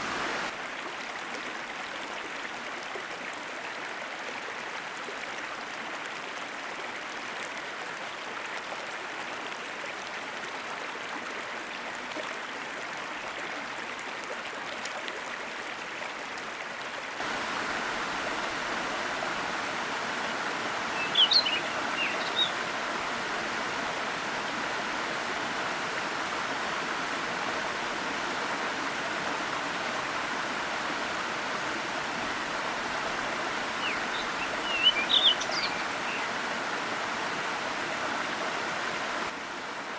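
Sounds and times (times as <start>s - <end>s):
waterfall rushing: 0.0s - 0.6s, 17.2s - 39.9s
bird chirping: 20.9s - 22.6s, 33.8s - 36.3s.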